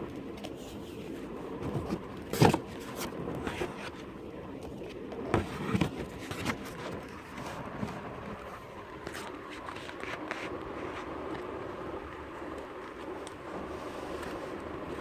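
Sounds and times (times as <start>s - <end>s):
cardboard box knocks and scrapes: 1.6s - 4.0s, 5.3s - 8.0s.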